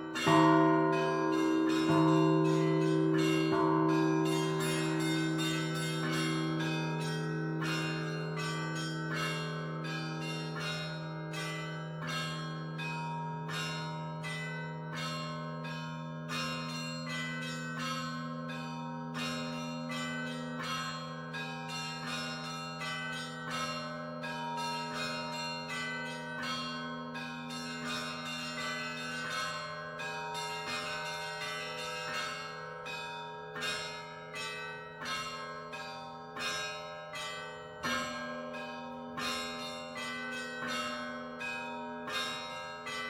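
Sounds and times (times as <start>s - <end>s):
large bell humming: 0.0s - 24.2s
small church bells pealing: 0.0s - 43.0s.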